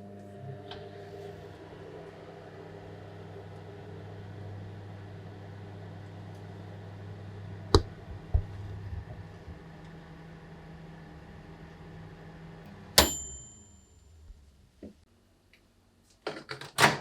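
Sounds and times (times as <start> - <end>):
steady low hum: 6.8 - 15.1.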